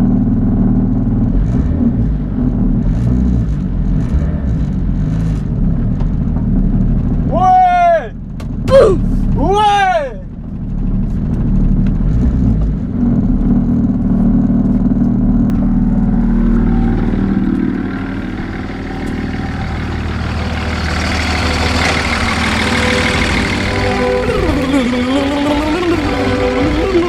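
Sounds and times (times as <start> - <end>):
motorcycle engine revving: 10.3 - 27.0.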